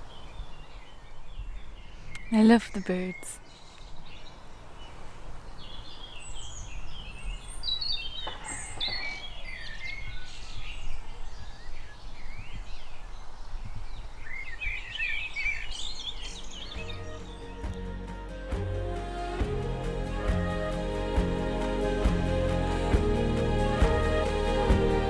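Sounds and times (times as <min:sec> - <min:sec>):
songbirds chirping and singing: 0:00.0 - 0:25.0
wind rumble on microphone: 0:04.8 - 0:17.2
music: 0:16.7 - 0:25.0.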